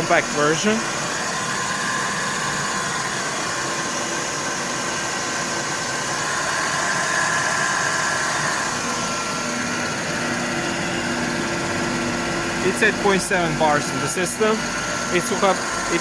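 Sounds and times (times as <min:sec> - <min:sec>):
air compressor running: 0:00.0 - 0:16.0.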